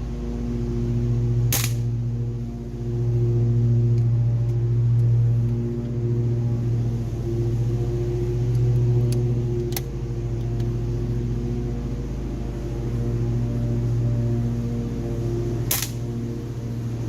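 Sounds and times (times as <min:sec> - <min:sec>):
lawn mower engine running: 0:00.0 - 0:17.0
sharp click: 0:15.7 - 0:16.0.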